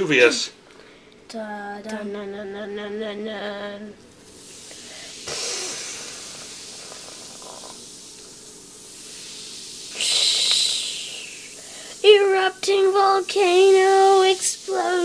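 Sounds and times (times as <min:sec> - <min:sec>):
baking soda and vinegar fizzing: 0:04.4 - 0:15.0.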